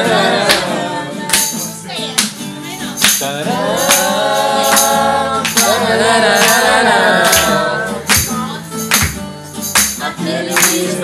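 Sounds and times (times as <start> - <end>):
voices singing: 0.0 - 8.8, 9.7 - 11.0
acoustic guitar: 0.0 - 11.0
sharp cajon hits: 7.3 - 10.8.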